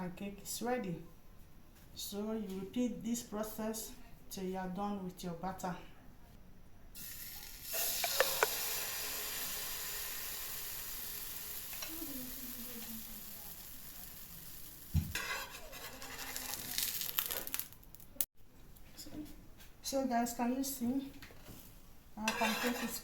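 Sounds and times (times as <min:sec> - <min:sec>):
batter sizzling in a frying pan: 0:07.0 - 0:18.3, 0:22.3 - 0:23.0.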